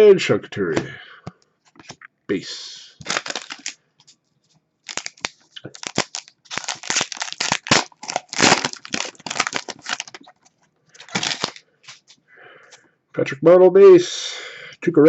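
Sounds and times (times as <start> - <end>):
foil wrapper crinkling: 3.0 - 3.8, 4.8 - 12.2.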